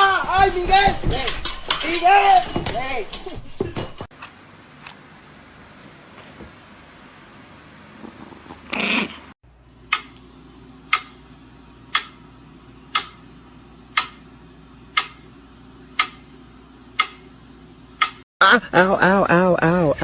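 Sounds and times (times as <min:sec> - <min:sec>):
sharp ticking: 0:10.9 - 0:11.2, 0:11.9 - 0:12.2, 0:12.9 - 0:13.2, 0:14.0 - 0:14.3, 0:15.0 - 0:15.3, 0:16.0 - 0:16.3, 0:17.0 - 0:17.3.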